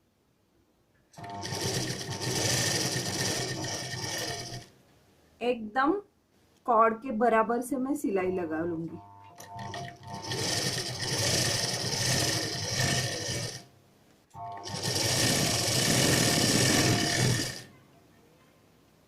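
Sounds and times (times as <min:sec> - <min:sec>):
sewing machine stitching: 0:01.2 - 0:04.7, 0:09.4 - 0:13.7, 0:14.4 - 0:17.7.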